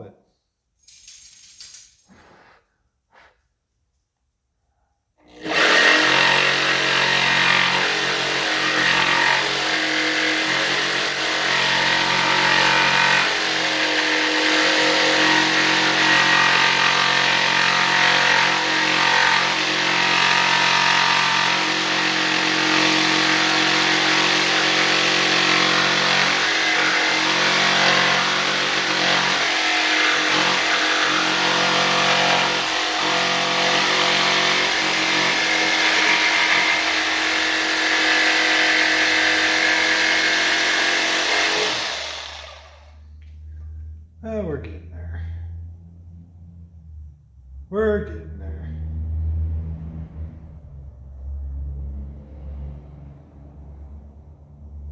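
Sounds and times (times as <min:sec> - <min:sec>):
jigsaw cutting steel: 0:05.2 - 0:43.0.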